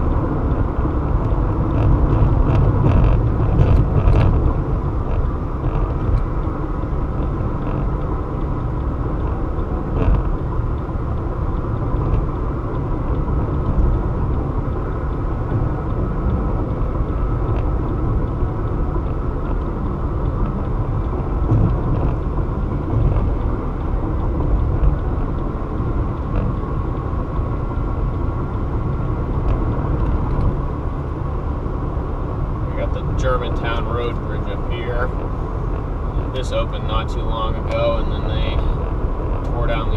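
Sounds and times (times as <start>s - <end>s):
car driving at highway speed: 0.0s - 39.9s.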